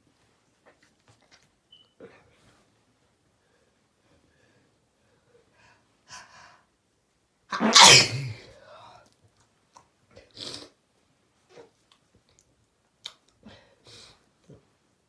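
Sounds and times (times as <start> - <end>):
person sneezing: 7.5 - 8.5.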